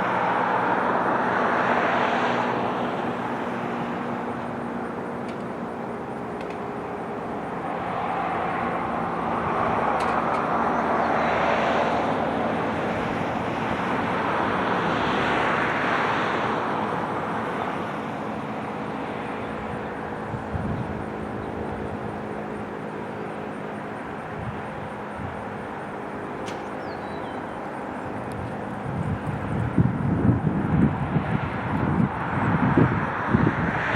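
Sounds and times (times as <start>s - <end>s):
low engine hum: 0.0s - 33.9s
vehicle rushing past: 7.3s - 22.6s.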